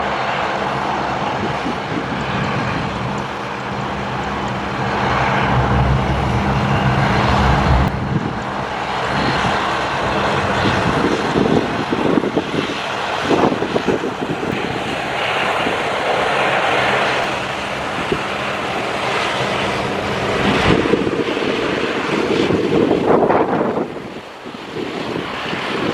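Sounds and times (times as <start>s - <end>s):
jet engines on landing: 0.0s - 25.9s
wind buffeting microphone: 0.0s - 25.9s.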